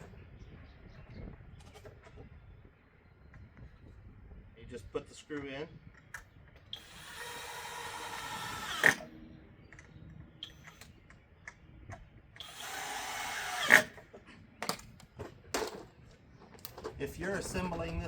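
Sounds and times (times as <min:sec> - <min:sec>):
power drill driving screws: 0:06.7 - 0:09.1, 0:12.4 - 0:14.0.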